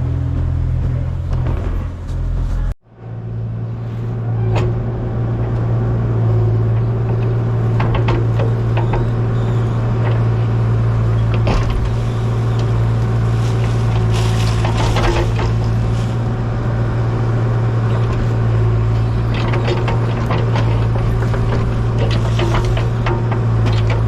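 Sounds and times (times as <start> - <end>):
engine running: 0.0 - 24.0
metallic clanks and knocks: 6.5 - 16.2, 17.9 - 24.0.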